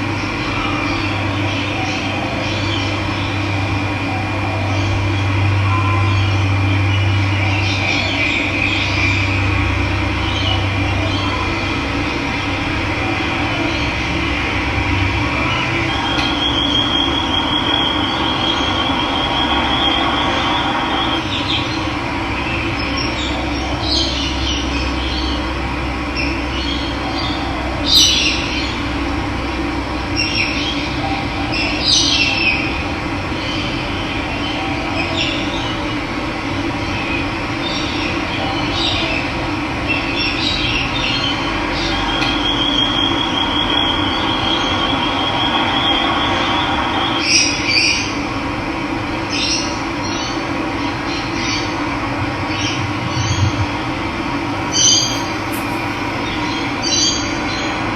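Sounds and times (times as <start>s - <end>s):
birds calling: 54.6s - 57.7s
short bird chirps: 54.7s - 56.7s
high even bird trill: 54.7s - 57.2s.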